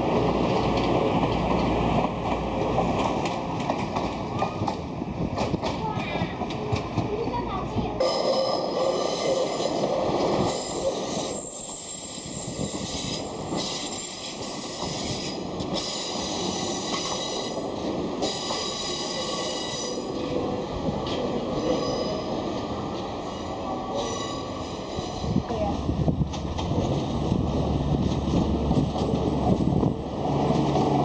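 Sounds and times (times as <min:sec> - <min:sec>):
train rumbling on rails: 0:00.0 - 0:31.0
train wheels squealing: 0:08.0 - 0:09.8, 0:10.4 - 0:17.6, 0:18.2 - 0:20.1, 0:21.5 - 0:22.4, 0:23.2 - 0:25.4.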